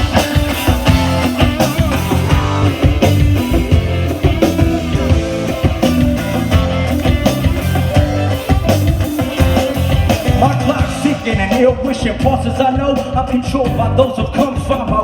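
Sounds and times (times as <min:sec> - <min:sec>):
bass guitar: 0:00.0 - 0:15.0
drum kit: 0:00.0 - 0:15.0
electric guitar: 0:00.0 - 0:15.0.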